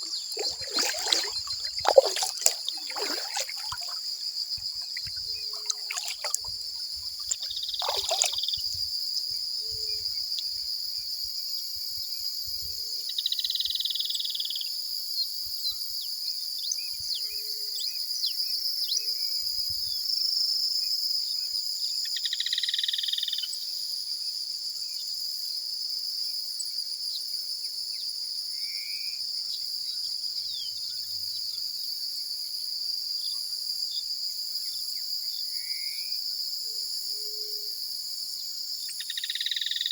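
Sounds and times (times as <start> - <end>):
crickets trilling: 0.0 - 11.6, 36.8 - 39.9.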